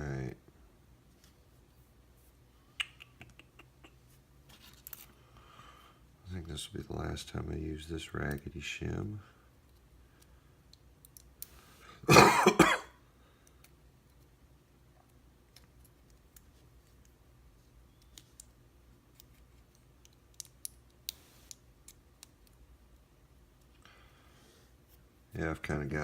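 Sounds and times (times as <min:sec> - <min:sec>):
small metal parts clicking: 0:09.6 - 0:11.5, 0:18.0 - 0:23.0
man coughing: 0:12.0 - 0:13.0.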